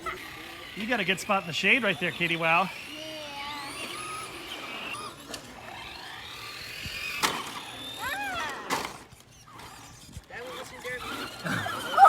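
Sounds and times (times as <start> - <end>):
electric motor whining: 0.0 - 12.0.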